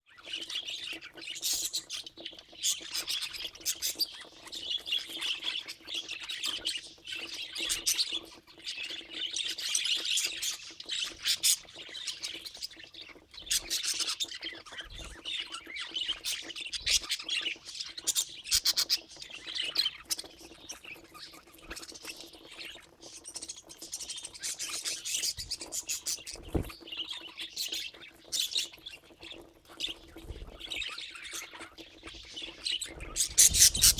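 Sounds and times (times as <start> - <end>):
budgerigars chattering: 29.8 - 33.9.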